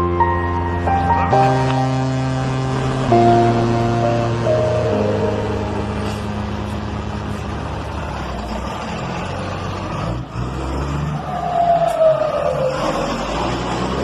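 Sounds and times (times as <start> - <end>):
sustained music notes: 0.0 - 9.2
vehicle engine running: 0.0 - 11.1.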